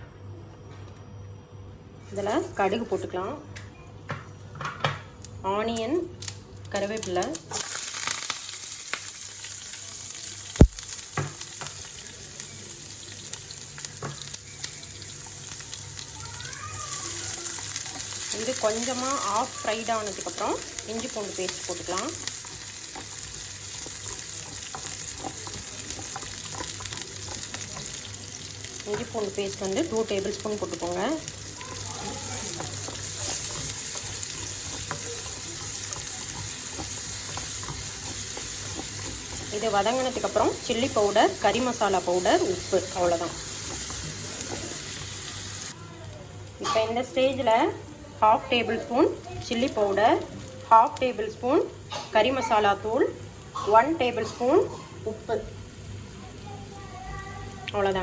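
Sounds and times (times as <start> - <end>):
onion sizzling in hot oil: 4.5 - 58.0
knocks on pan: 10.6 - 11.8.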